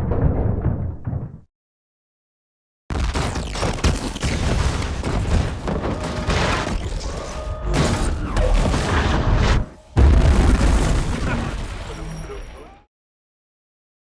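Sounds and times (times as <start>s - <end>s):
booms: 0.0s - 1.5s, 2.9s - 12.5s
metallic crashing: 4.1s - 12.7s.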